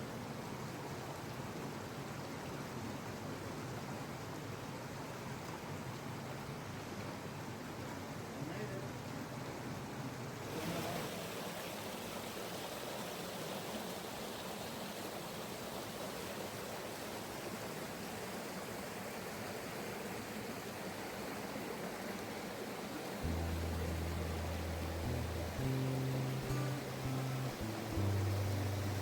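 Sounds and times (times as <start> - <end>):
creek water rushing: 0.0 - 29.0
low steady hum: 23.2 - 29.0.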